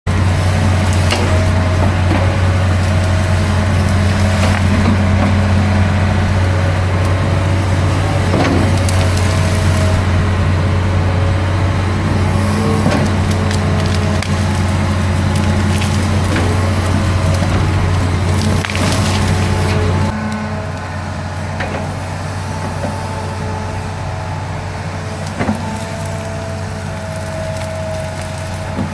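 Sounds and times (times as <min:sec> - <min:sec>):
excavator engine running: 0:00.0 - 0:28.9
wood cracking and splintering: 0:00.1 - 0:28.9.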